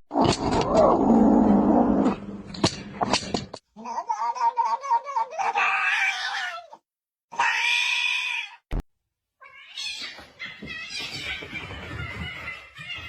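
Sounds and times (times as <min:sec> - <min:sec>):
cat meowing loudly: 0:05.3 - 0:08.6.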